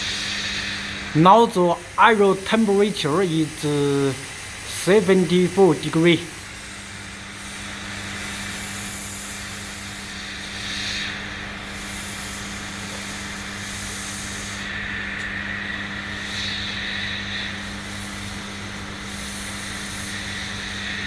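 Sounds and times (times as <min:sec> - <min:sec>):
hot air gun hissing: 0:00.0 - 0:15.4, 0:16.0 - 0:21.0.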